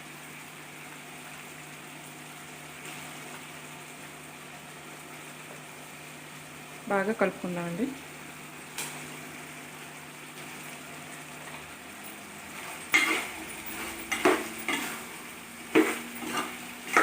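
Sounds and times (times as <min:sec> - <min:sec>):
chicken sizzling in oil: 0:00.0 - 0:17.0
spatula scraping and knocking pan: 0:12.5 - 0:17.0.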